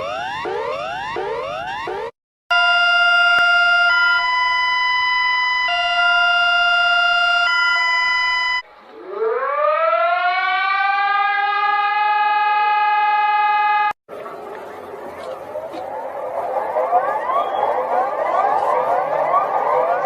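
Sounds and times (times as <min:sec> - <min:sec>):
siren winding up: 0:00.0 - 0:14.0.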